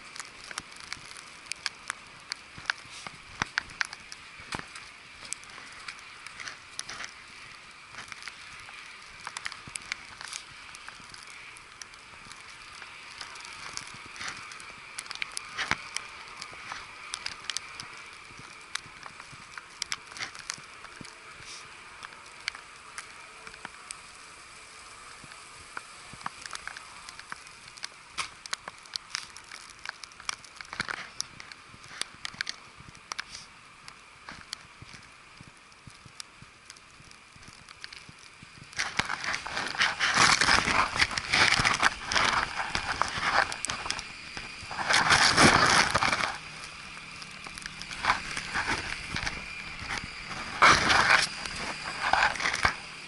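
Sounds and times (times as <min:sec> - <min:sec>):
blizzard hiss: 0:00.0 - 0:53.0
snow crackling and ticking: 0:00.0 - 0:53.0.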